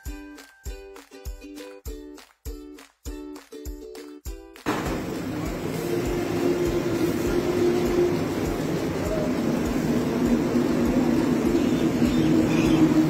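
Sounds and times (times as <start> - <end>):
car engine humming: 4.7 - 13.0.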